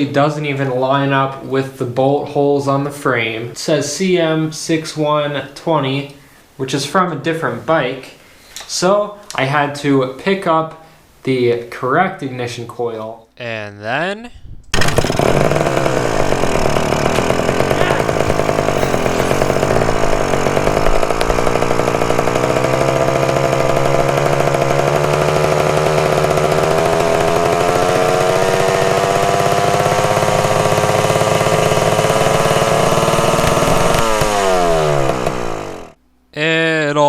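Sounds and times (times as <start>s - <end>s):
two-stroke engine revving high: 14.8s - 36.0s.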